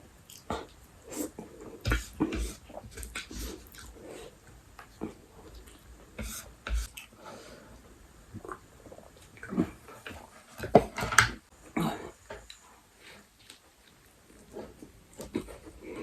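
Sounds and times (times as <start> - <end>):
chewing and mouth noises: 0.2 - 4.0.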